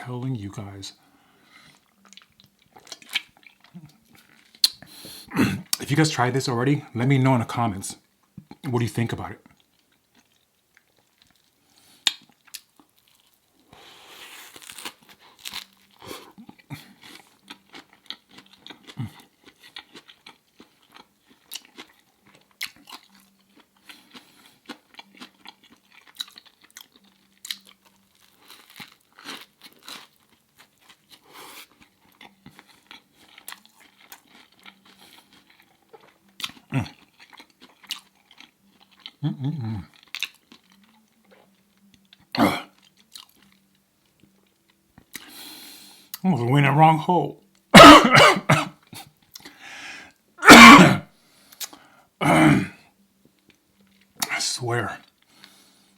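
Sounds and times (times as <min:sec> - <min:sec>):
wet mouth clicks: 0:04.6 - 0:04.9, 0:51.5 - 0:51.8
crunchy bites and chewing: 0:14.4 - 0:41.0.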